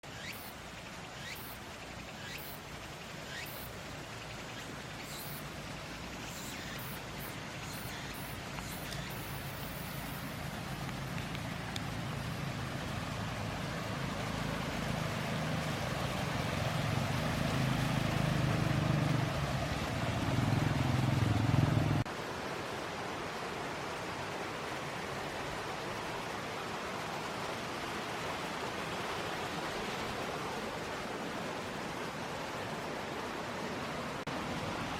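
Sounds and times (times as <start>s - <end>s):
mountain water rushing: 0.0s - 34.9s.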